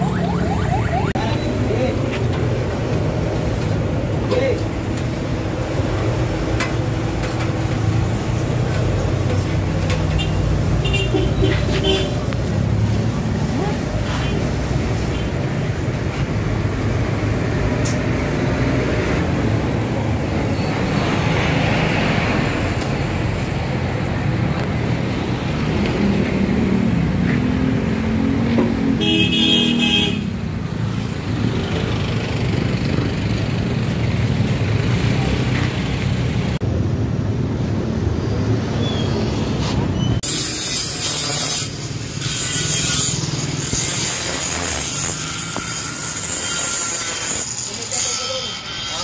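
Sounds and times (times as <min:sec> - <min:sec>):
car road and engine rumble: 0:00.0 - 0:40.3
vehicle horn honking: 0:29.0 - 0:30.3.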